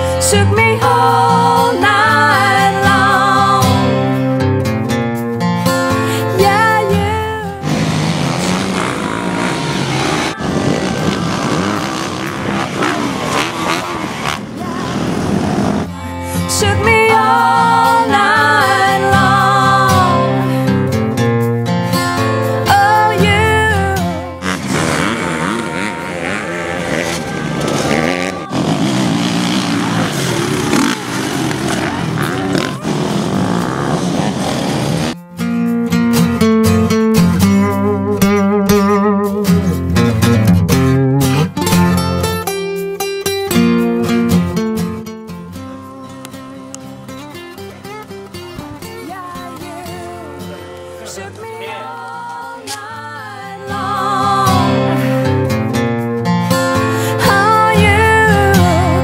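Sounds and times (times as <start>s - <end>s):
strummed guitar music: 0.0s - 59.0s
motorcycle engines revving: 6.6s - 20.6s, 23.2s - 35.2s.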